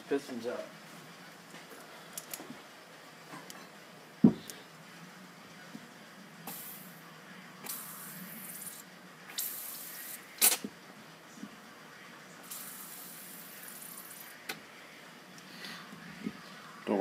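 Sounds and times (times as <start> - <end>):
compressed air hissing: 6.4 - 7.0, 7.6 - 10.6, 12.4 - 14.4.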